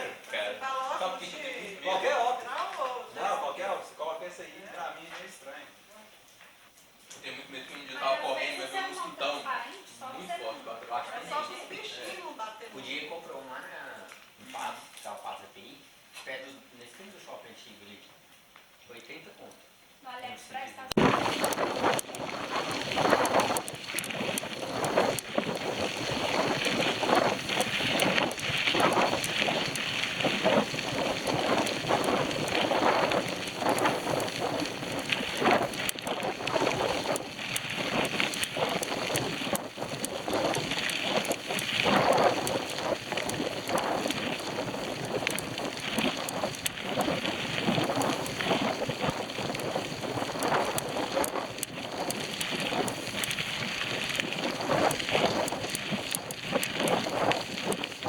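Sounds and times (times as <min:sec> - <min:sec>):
wind rushing over microphone: 0:20.9 - 0:58.0.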